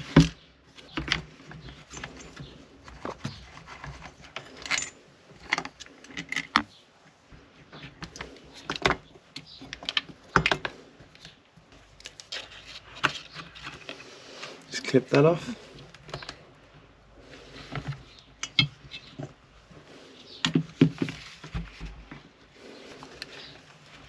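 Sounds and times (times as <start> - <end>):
metal tools clicking and clinking: 1.7 - 2.5, 4.4 - 6.5, 18.4 - 19.1.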